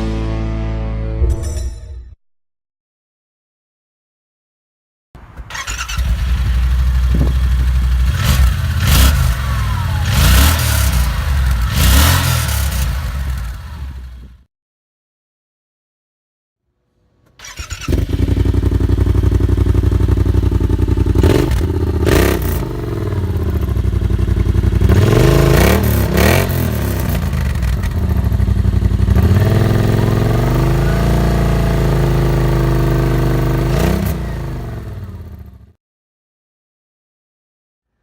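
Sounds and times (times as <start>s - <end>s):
engine idling and revving: 5.4s - 14.5s, 17.4s - 35.8s.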